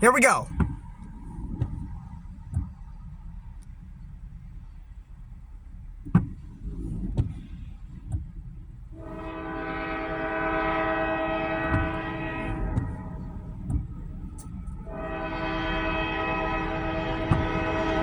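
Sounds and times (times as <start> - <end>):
locomotive air horn blast: 9.0 - 13.6, 14.8 - 18.0.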